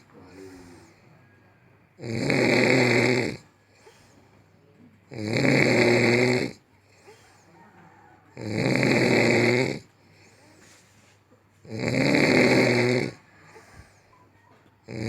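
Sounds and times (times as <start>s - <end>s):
woman snoring: 0.0s - 1.0s, 2.0s - 4.2s, 5.1s - 7.5s, 8.3s - 10.6s, 11.6s - 14.1s.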